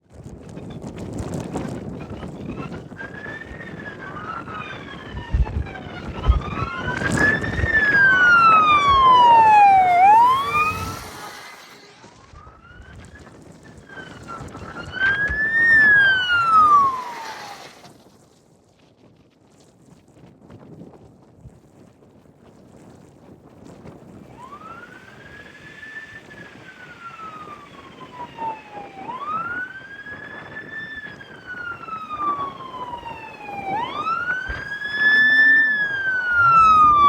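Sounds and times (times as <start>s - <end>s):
wind buffeting microphone: 0.1s - 11.5s, 12.3s - 17.9s, 20.2s - 37.0s
fire engine sirens wailing: 2.0s - 17.9s, 24.3s - 37.0s.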